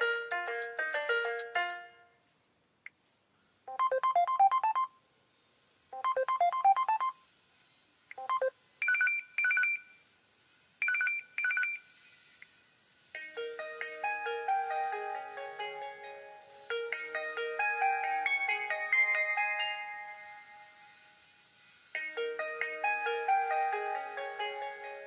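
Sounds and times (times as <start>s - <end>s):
melodic ringtone: 0.0s - 2.0s, 3.7s - 4.9s, 6.0s - 7.2s, 8.2s - 9.8s, 13.3s - 20.5s, 22.1s - 25.0s
high double beeps: 3.7s - 4.9s, 6.0s - 7.2s, 8.2s - 9.8s.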